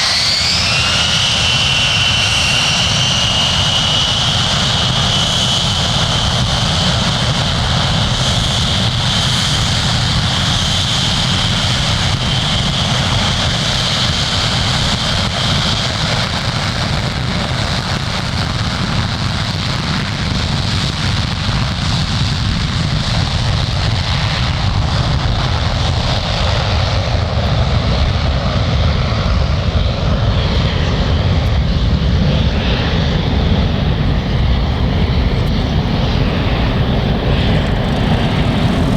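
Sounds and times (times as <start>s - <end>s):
jet engines running: 0.0s - 23.4s, 29.6s - 38.9s
high engine whine: 31.4s - 38.9s.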